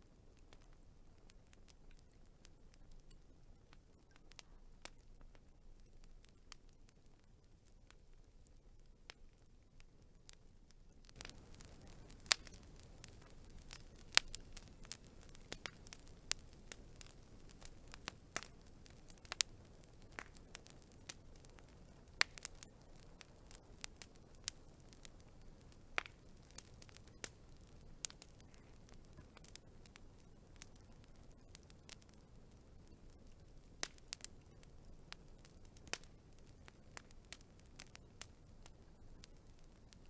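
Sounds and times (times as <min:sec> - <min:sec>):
wood fire crackling: 0:00.0 - 0:40.0.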